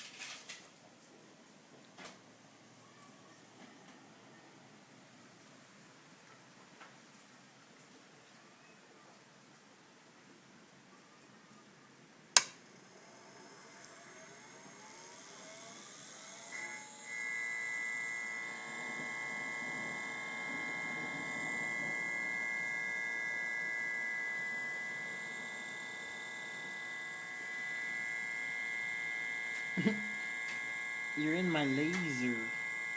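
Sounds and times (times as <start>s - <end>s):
electrical hum with high whine: 12.3s - 32.9s
sharp switch click: 12.4s - 12.6s
electronics whir rising in pitch: 12.7s - 32.9s.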